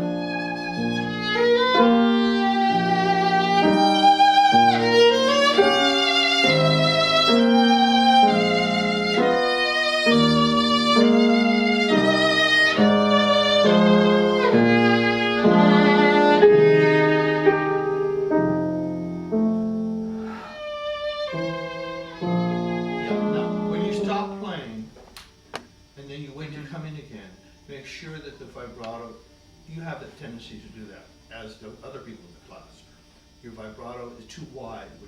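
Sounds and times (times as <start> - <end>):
bowed viola melody: 0.0 - 24.9.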